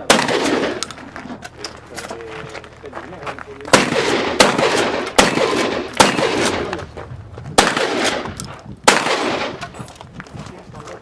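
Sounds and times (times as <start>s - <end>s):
shotgun shots echoing: 0.0s - 1.1s, 3.7s - 6.8s, 7.6s - 9.8s.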